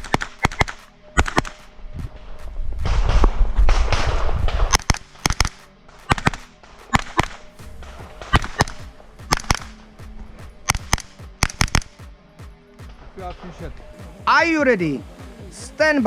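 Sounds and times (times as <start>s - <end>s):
gunshots: 0.0s - 12.1s
loud rushing noise: 1.2s - 11.7s.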